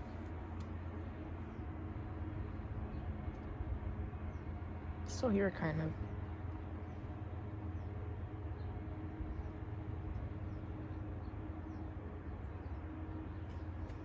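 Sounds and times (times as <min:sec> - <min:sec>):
traffic rumble: 0:00.0 - 0:14.0
wind: 0:00.0 - 0:14.0.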